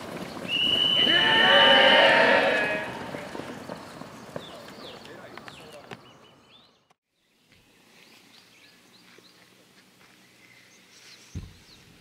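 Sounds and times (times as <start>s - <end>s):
birds chirping: 0.1s - 9.5s.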